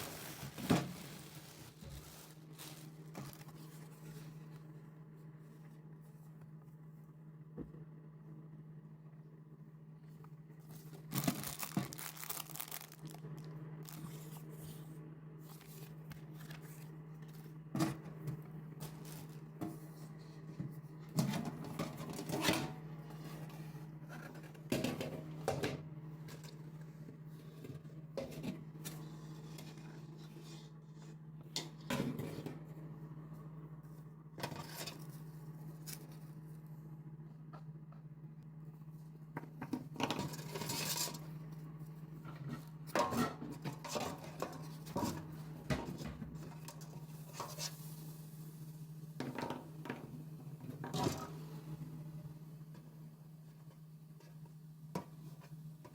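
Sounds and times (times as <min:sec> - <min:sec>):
cardboard and plastic tearing and crinkling: 0:00.0 - 0:03.9, 0:11.0 - 0:14.3.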